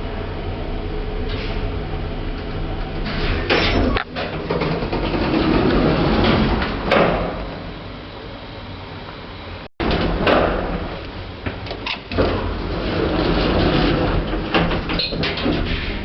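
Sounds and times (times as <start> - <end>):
lift machinery hum: 0.0 - 16.0.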